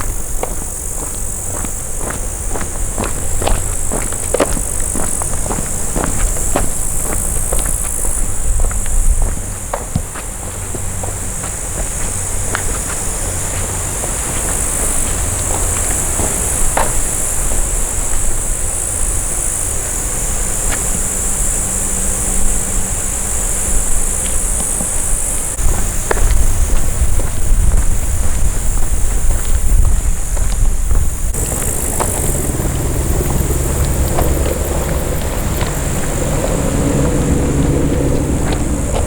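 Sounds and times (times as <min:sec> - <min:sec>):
insects chirring: 0:00.0 - 0:39.0
low rumble: 0:30.9 - 0:39.0.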